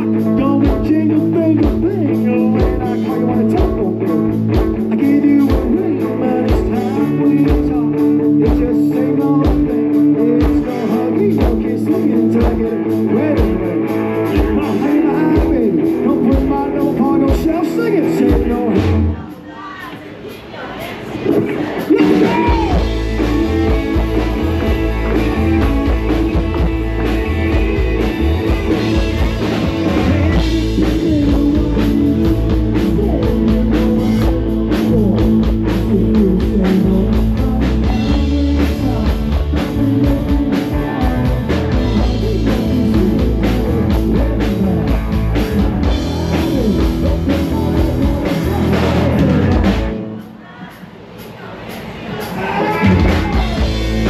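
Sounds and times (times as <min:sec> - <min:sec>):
live rock band playing: 0:00.0 - 0:19.6, 0:21.0 - 0:54.0.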